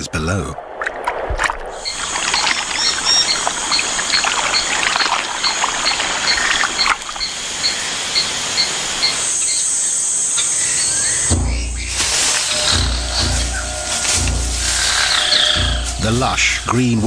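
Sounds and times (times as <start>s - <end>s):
water trickling and splashing: 0.7s - 17.0s
steady high drone: 10.1s - 17.0s.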